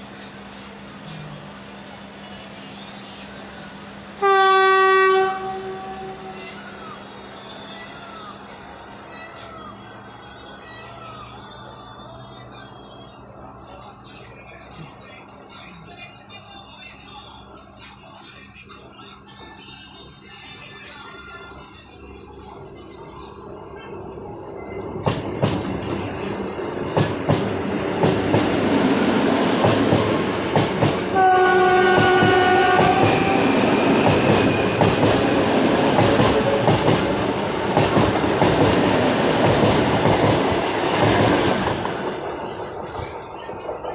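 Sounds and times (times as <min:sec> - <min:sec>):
electric train passing: 0:00.0 - 0:43.9
train horn: 0:04.2 - 0:06.6, 0:31.1 - 0:34.7.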